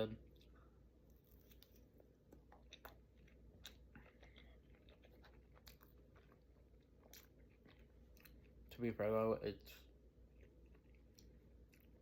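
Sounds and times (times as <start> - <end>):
close-up chewing crunches: 1.1 - 8.7.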